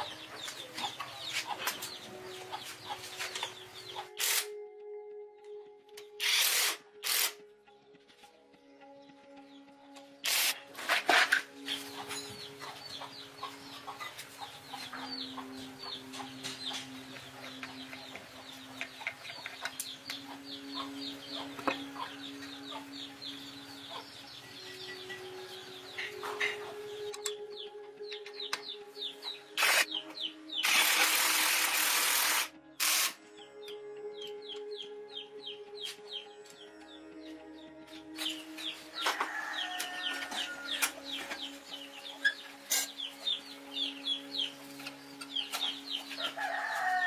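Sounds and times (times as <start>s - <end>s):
birds chirping: 0.0s - 4.4s, 11.5s - 31.0s, 33.4s - 47.0s.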